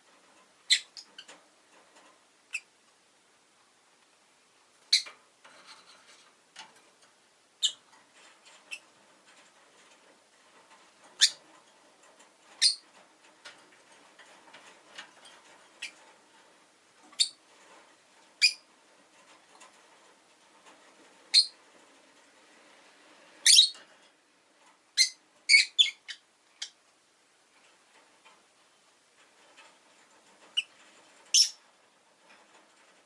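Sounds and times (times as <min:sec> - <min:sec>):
lovebird chirping: 0:00.7 - 0:01.3, 0:07.6 - 0:07.8, 0:11.2 - 0:11.4, 0:12.6 - 0:12.8, 0:17.2 - 0:17.4, 0:18.4 - 0:18.6, 0:21.3 - 0:21.6, 0:23.4 - 0:23.8, 0:25.0 - 0:26.8, 0:31.3 - 0:31.6.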